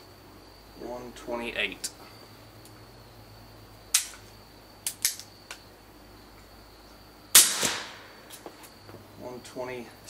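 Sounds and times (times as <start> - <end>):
suppressed pistol shots: 7.3 - 8.2.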